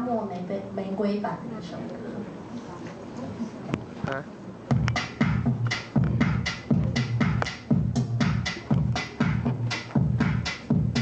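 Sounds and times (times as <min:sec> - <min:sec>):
driving drum beat: 0:04.7 - 0:11.0.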